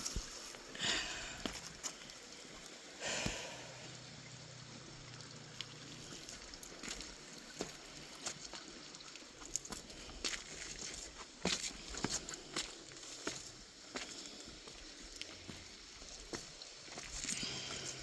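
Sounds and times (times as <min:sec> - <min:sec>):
footsteps and scrapes on rock: 0:00.0 - 0:02.1, 0:09.4 - 0:18.0
faint trickle of water: 0:00.0 - 0:18.0.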